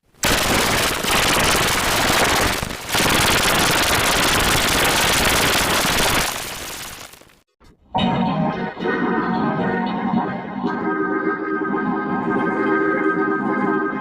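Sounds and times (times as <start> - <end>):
harsh digital crackle and static: 0.0 - 7.4.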